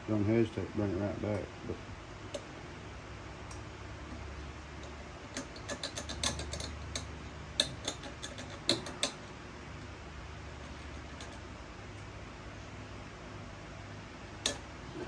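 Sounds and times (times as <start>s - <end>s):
low steady hum: 0.0s - 15.0s
small parts clicking and tapping: 2.3s - 2.6s, 3.4s - 9.3s, 10.6s - 11.5s, 14.4s - 14.7s.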